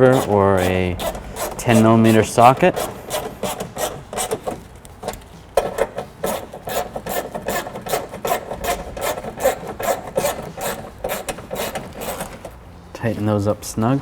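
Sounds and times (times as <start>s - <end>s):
hand tool rasping strokes: 0.0s - 4.6s, 5.6s - 12.5s.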